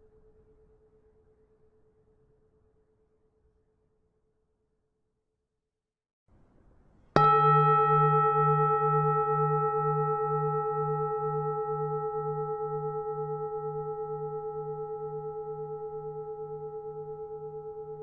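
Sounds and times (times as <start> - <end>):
temple bell ringing: 7.2 - 18.0.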